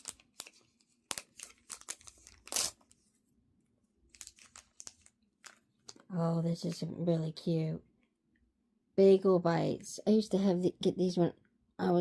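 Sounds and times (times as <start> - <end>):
plastic wrapper crinkling and tearing: 0.0 - 3.0, 4.0 - 6.1.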